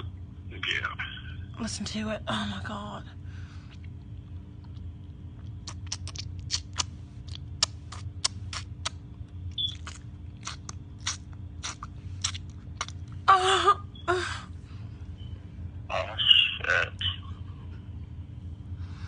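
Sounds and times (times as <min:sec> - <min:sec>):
steady low hum: 0:00.0 - 0:19.0
wet clicks and smacks: 0:03.7 - 0:13.2.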